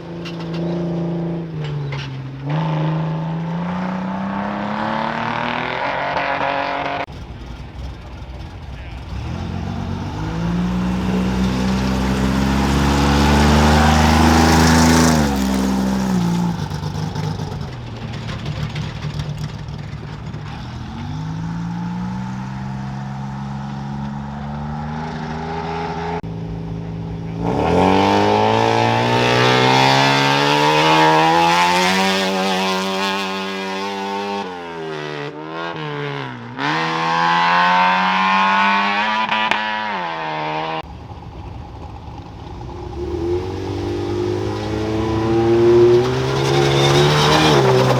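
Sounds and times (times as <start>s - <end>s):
race vehicle engines revving: 0.0s - 47.9s.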